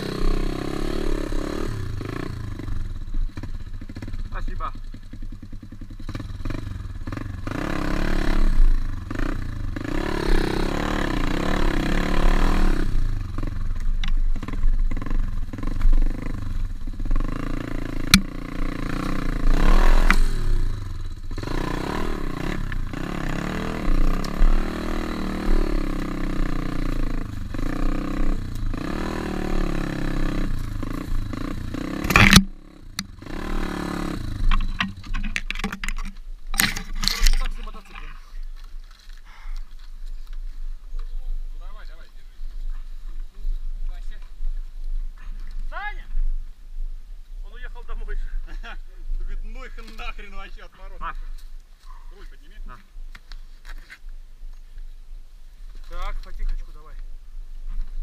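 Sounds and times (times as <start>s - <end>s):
pit bike engine revving: 0.0s - 35.9s.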